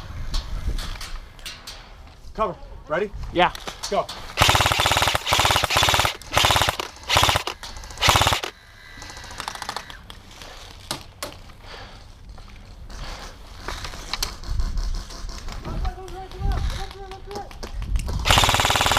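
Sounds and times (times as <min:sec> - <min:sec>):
electric airsoft gun firing: 0:04.4 - 0:08.6, 0:18.2 - 0:18.9.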